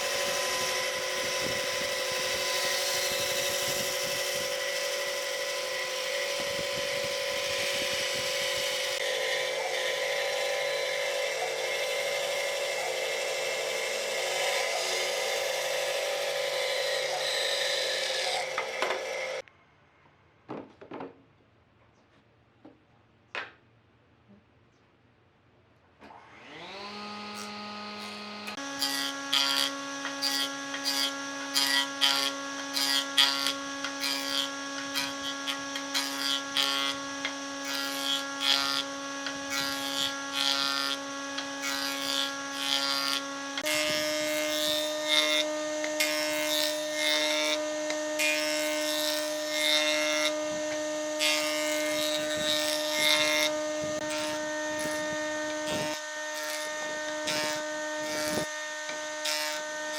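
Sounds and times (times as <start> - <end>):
power tool motor running: 0.0 - 19.4, 26.1 - 59.9
tool scraping into wood: 27.3 - 59.9.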